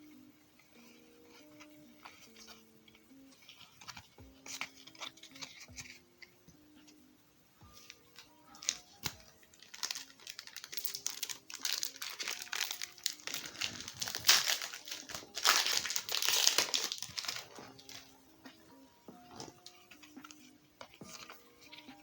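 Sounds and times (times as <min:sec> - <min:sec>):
foil wrapper crinkling: 0:03.4 - 0:06.0, 0:07.8 - 0:18.2.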